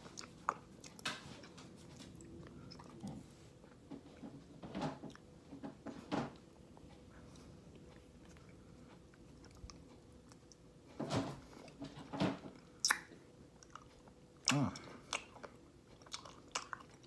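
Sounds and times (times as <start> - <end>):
mouth and chewing sounds: 0.0 - 3.8, 6.4 - 10.7, 12.6 - 17.0.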